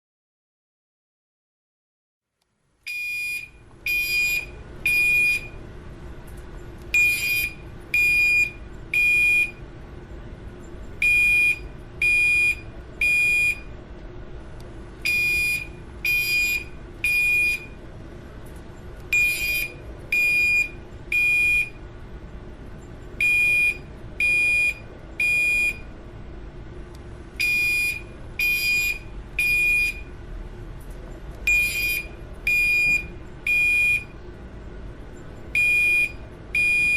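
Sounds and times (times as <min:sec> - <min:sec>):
steady low hum: 0:02.3 - 0:36.9
fire alarm high-pitched beeps: 0:02.9 - 0:05.6, 0:07.0 - 0:09.6, 0:11.0 - 0:13.7, 0:15.0 - 0:17.8, 0:19.1 - 0:21.8, 0:23.2 - 0:25.9, 0:27.4 - 0:30.1, 0:31.5 - 0:34.2, 0:35.5 - 0:36.9.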